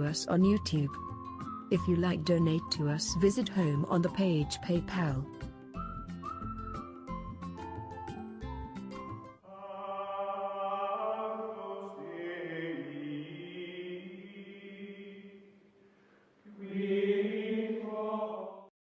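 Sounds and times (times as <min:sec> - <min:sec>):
choir-like chanting music: 0:09.4 - 0:15.6, 0:16.5 - 0:18.7.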